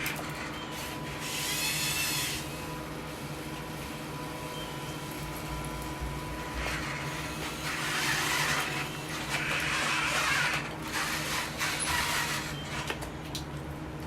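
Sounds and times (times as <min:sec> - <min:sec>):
small electric motors running: 0:00.0 - 0:02.6, 0:06.5 - 0:13.0.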